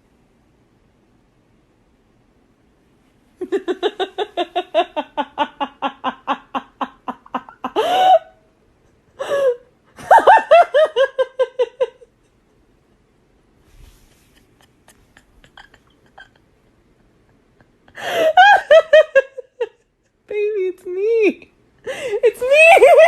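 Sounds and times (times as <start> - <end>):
person laughing hard: 3.4 - 8.4, 9.1 - 12.1, 14.4 - 19.8.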